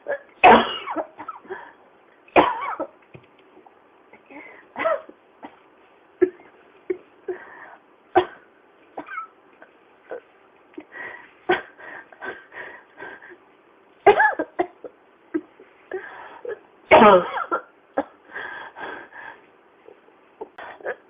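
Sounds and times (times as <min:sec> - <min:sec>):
person coughing: 0:00.0 - 0:01.7, 0:02.4 - 0:03.0, 0:09.0 - 0:09.3, 0:14.1 - 0:14.9, 0:16.9 - 0:18.2.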